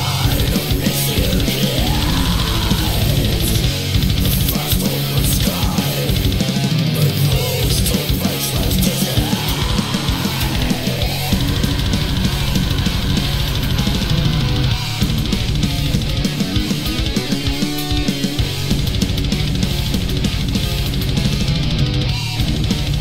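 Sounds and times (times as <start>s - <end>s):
distorted electric guitars: 0.0s - 23.0s
heavy metal music: 0.0s - 23.0s.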